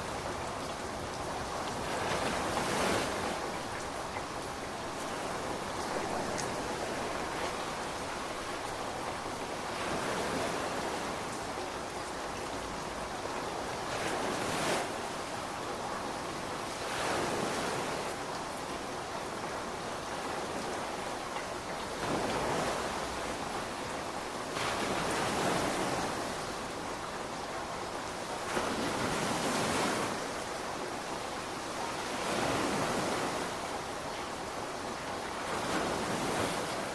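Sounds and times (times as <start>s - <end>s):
ocean waves breaking: 0.0s - 8.9s, 21.9s - 26.8s, 27.9s - 36.9s
rain hiss: 0.0s - 36.9s.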